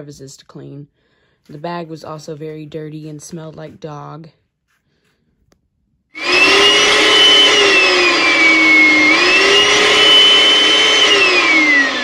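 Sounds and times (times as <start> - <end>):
vacuum cleaner motor whining: 6.1 - 12.0.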